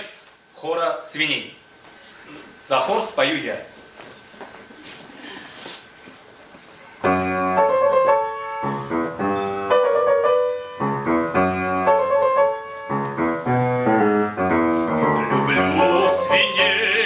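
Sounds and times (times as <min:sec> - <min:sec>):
low room noise: 0:00.0 - 0:17.0
piano playing chords: 0:07.0 - 0:17.0.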